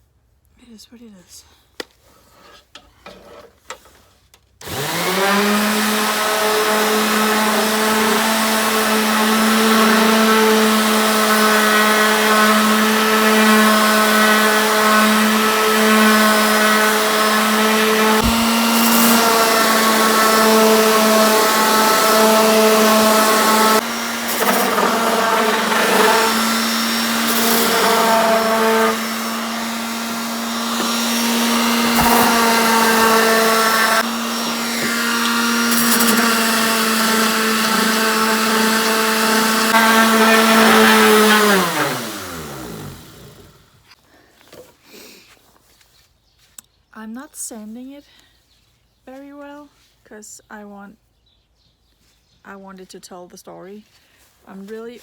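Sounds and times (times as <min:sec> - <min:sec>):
electric sander sanding wood: 0:04.6 - 0:43.9.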